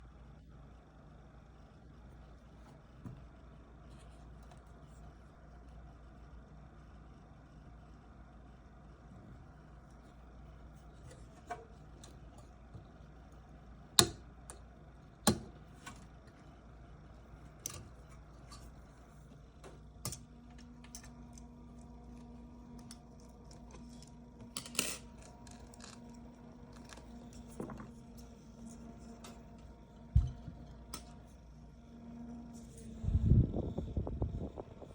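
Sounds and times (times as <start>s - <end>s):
computer fan humming: 0.0s - 34.9s
second low hum: 0.0s - 34.9s
fan clicking and scraping: 10.8s - 13.0s, 17.5s - 31.4s, 32.5s - 34.9s.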